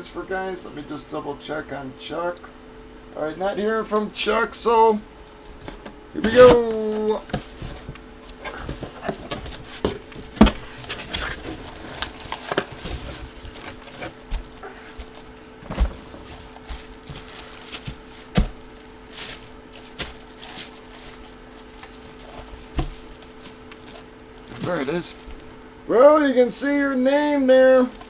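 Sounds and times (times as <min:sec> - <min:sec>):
cardboard box rustling and scraping: 0:05.2 - 0:25.6.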